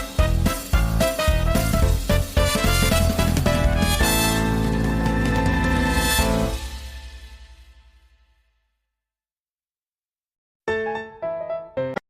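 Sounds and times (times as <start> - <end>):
background music: 0.0 - 8.4.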